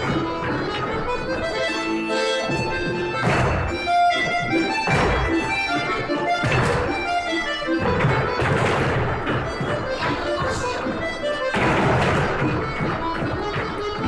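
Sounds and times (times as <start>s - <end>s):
accordion melody with chords: 0.0s - 14.0s
short accented thud: 2.4s - 5.7s, 6.3s - 14.0s.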